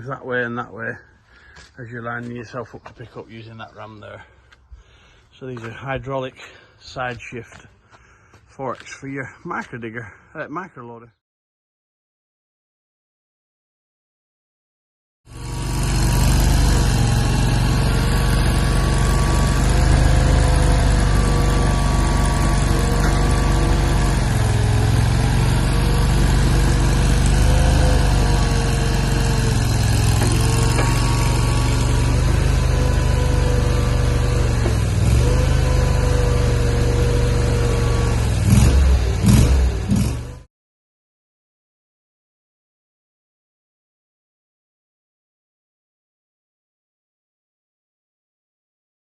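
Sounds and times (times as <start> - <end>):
loader engine running: 15.3 - 40.5.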